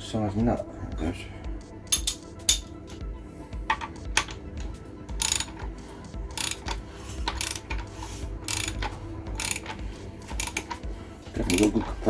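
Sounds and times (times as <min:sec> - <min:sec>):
socket ratchet clicking: 0:01.9 - 0:02.9, 0:03.8 - 0:11.9.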